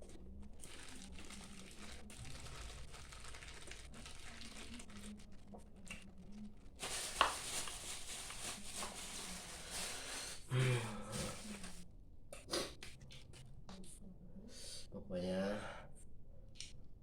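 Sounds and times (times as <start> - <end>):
chewing and crackling: 0.0 - 6.8.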